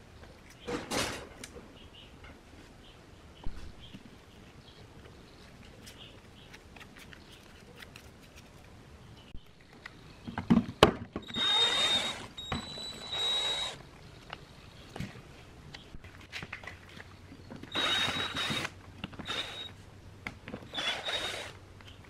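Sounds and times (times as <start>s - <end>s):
electric drill whining: 11.2s - 13.8s, 17.7s - 19.7s, 20.7s - 21.5s.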